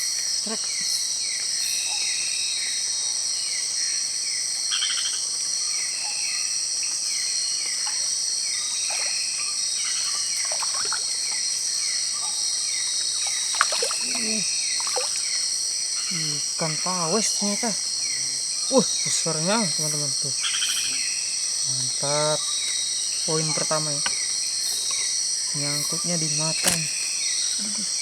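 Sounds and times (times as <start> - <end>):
crickets and insects droning: 0.0 - 28.0.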